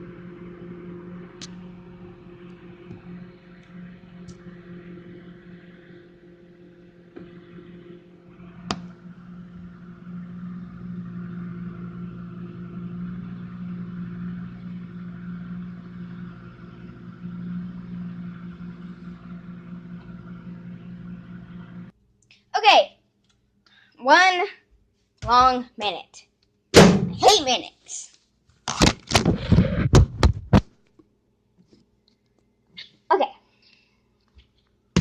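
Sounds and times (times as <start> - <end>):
microwave oven humming: 0.0 - 22.0.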